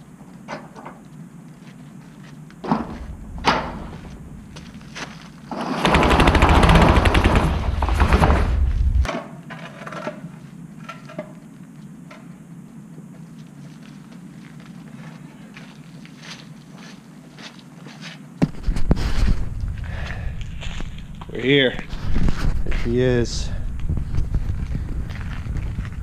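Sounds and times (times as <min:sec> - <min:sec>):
thumps: 0:02.6 - 0:05.2
metal roll-up door rattling: 0:05.5 - 0:08.6.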